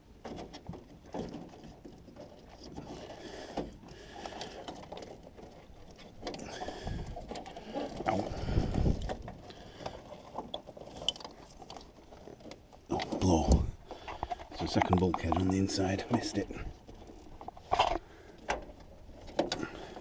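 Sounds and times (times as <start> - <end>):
plastic clips rustling and clicking: 14.0 - 20.0.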